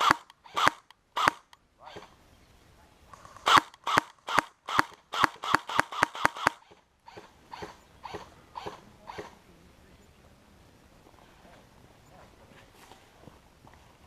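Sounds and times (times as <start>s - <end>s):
airsoft gun shots: 0.0s - 2.1s, 3.4s - 9.4s.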